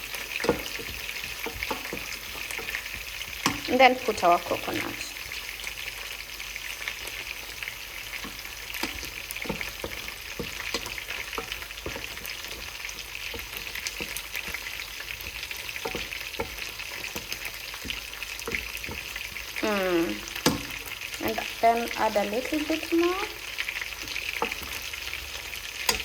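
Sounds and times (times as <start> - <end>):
fish sizzling in a pan: 0.0 - 26.0
small pops and crackles: 0.2 - 3.7, 6.9 - 21.2, 23.9 - 26.0.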